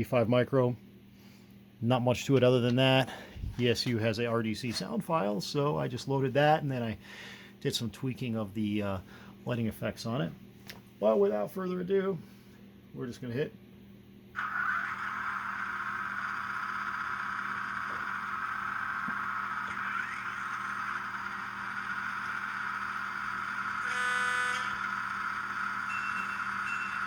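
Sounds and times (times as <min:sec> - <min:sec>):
model train diesel engine sound: 0:14.4 - 0:27.0.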